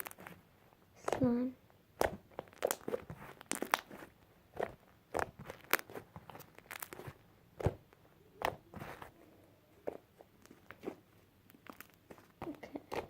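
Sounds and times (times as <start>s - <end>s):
slime pops and crackles: 0.0s - 0.4s, 1.9s - 9.0s, 9.8s - 13.0s.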